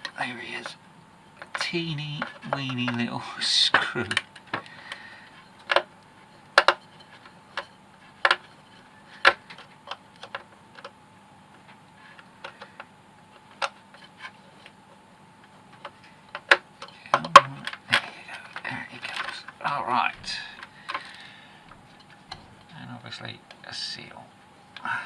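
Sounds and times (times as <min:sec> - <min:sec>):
hand tools clicking and tapping: 0:06.6 - 0:08.5.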